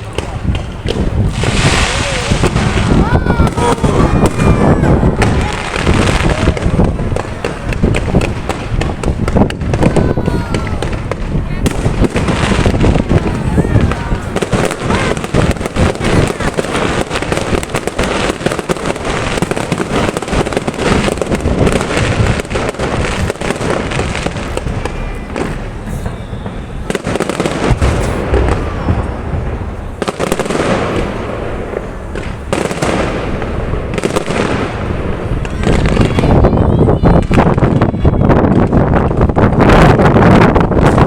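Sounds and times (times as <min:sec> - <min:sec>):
fireworks bangs and crackling: 0:00.0 - 0:41.0.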